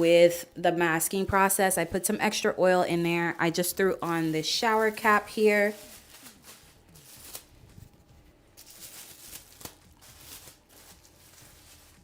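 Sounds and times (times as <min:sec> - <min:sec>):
shower cap plastic rustling: 0:03.9 - 0:07.7, 0:08.6 - 0:12.0.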